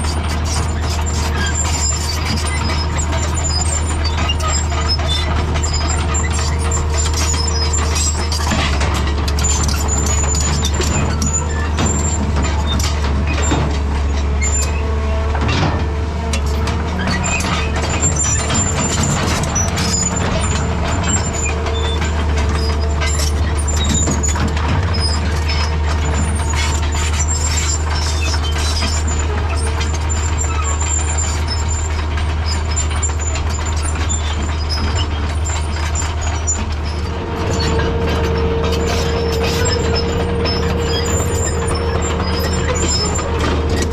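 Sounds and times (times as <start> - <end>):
excavator diesel engine running: 0.0 - 43.9
machine knocks and clanks: 0.0 - 43.9
high squeals: 33.6 - 43.9.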